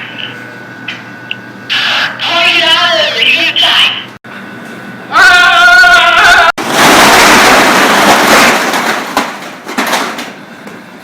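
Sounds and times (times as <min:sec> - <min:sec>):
explosion rush of noise: 0:06.6 - 0:09.1.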